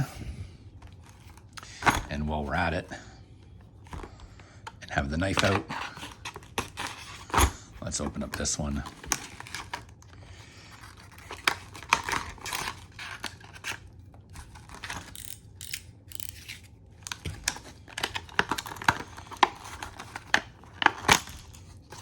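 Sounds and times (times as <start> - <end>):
packaging crinkling: 5.2 - 15.6, 16.2 - 22.0
knife cutting packaging: 5.2 - 22.0.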